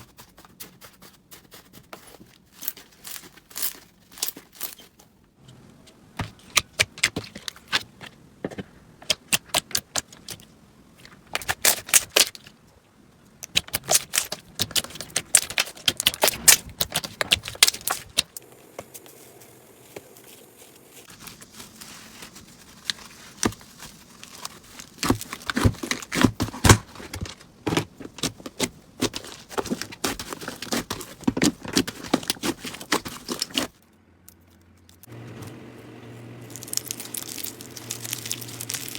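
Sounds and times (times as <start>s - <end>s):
slime squeezed by hand crackling: 36.5s - 38.9s.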